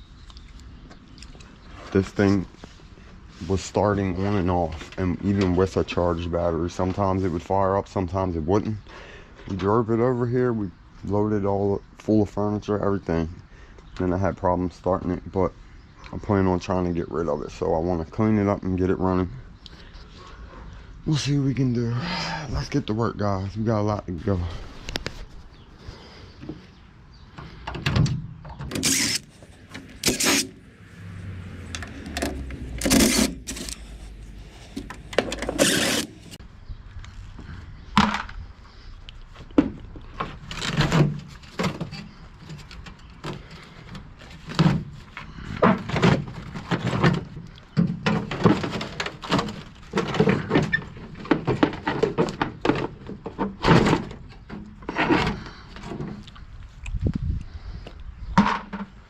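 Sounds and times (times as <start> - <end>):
objects knocking and clattering: 38.0 - 38.4, 44.4 - 56.2.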